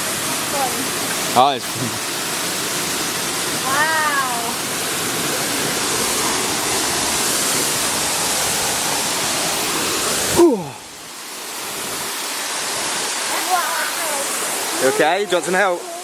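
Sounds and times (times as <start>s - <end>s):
waterfall roaring: 0.0s - 16.0s
short falling vocal sound: 10.3s - 10.8s.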